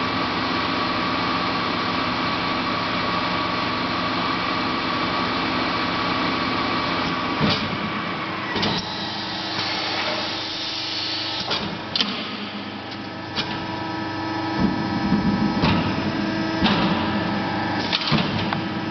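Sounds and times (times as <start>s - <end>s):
punching machine motor hum: 2.1s - 18.9s
sharp machine clunks: 11.4s - 12.6s, 16.6s - 17.1s, 17.8s - 18.6s.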